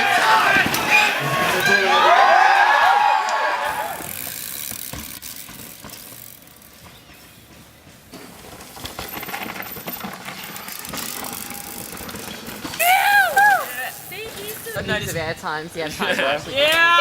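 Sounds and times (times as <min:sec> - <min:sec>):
tyre noise on dirt: 0:00.0 - 0:17.0
mountain bike rattling over dirt: 0:03.8 - 0:17.0.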